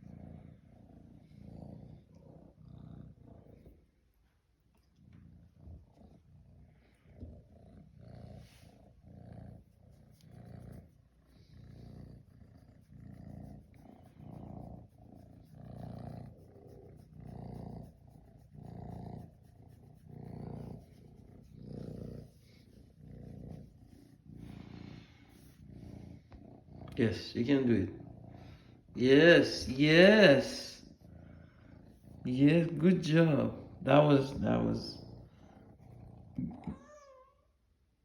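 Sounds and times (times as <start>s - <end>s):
kitten purring: 0.0s - 38.0s.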